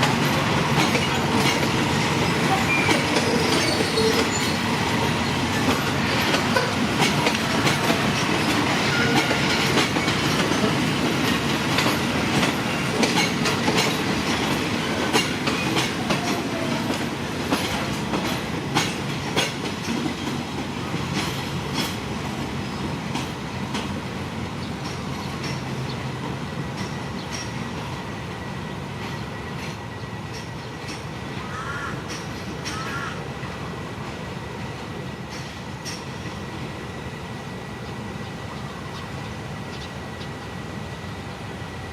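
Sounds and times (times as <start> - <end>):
train wheels clacking and squealing: 0.0 - 41.9.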